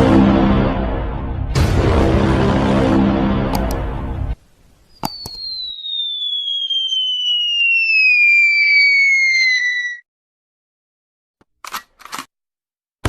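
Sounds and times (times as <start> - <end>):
falling whistle sound effect: 4.9 - 10.1.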